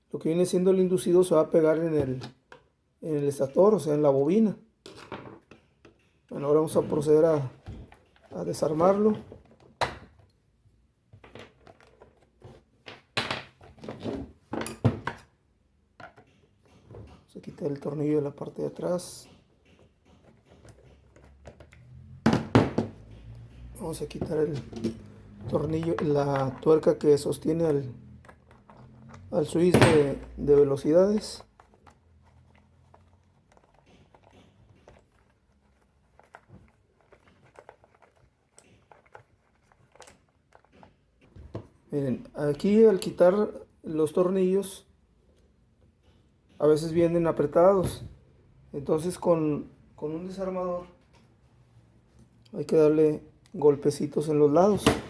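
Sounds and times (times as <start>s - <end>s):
motor parts knocking and rattling: 16.0s - 41.8s.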